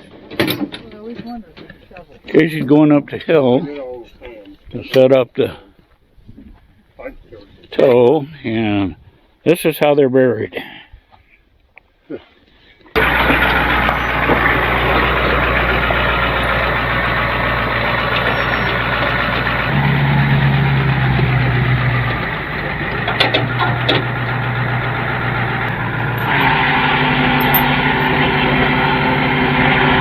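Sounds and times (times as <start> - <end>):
truck engine running: 13.0 - 30.0
sharp metal clanks: 27.3 - 28.2.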